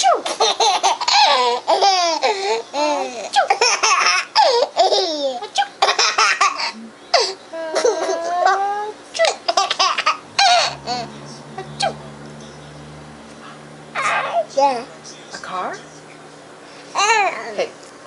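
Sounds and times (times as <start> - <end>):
baby laughing: 0.2 - 11.1, 14.0 - 14.4.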